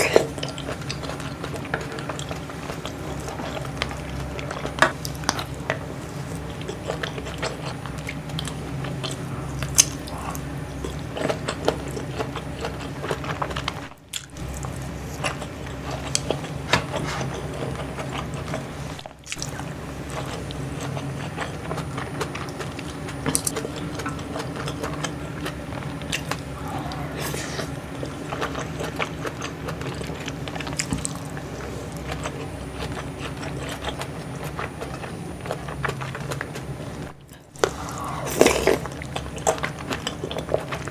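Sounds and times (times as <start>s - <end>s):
biting and chewing food: 0.0s - 40.9s
low hum: 25.7s - 28.6s.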